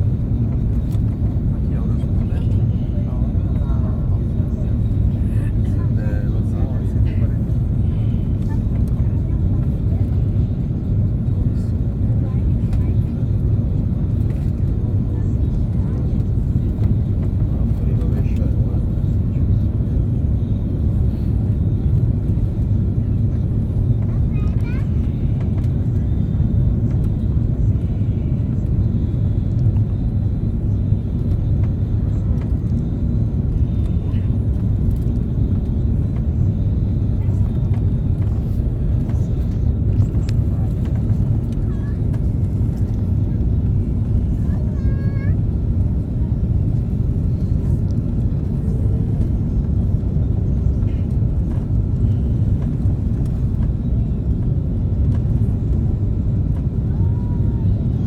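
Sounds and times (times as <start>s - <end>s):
airliner cabin rumble: 0.0s - 58.0s.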